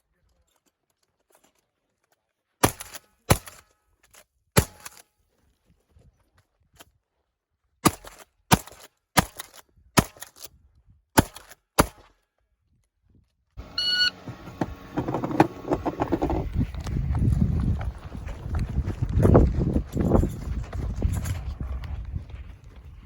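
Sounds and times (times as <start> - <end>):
shotgun shots: 2.6 - 3.6
short electronic beep: 13.6 - 14.3
scuffing and rustling movement: 13.6 - 23.0.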